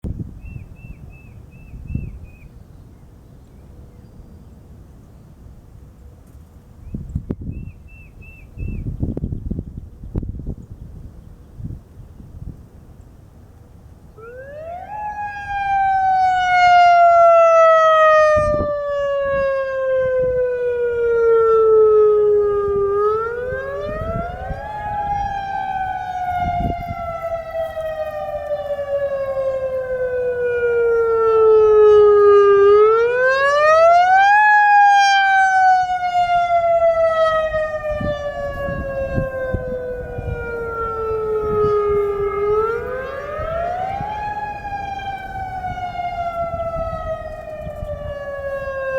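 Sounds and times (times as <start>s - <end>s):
warning siren rising and falling: 14.2s - 48.9s.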